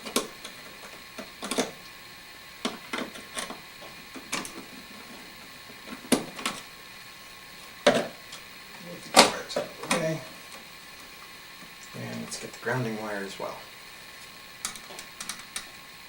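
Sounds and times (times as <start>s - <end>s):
screwdriver clicking and tapping: 14.6s - 15.7s.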